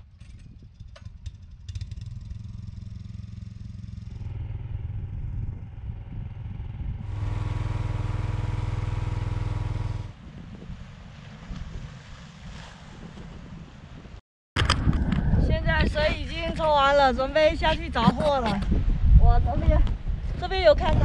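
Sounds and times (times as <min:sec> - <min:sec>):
water pump engine running: 0:01.0 - 0:10.2.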